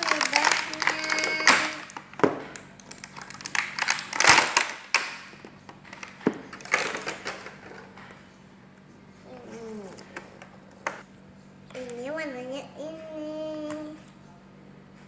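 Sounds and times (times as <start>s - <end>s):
plastic crinkling rustles: 0.0s - 5.0s.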